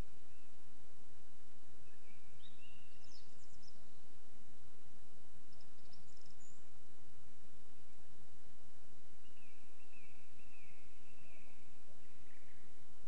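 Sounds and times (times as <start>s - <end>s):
background hiss: 0.0s - 13.0s
birds singing: 1.9s - 4.0s.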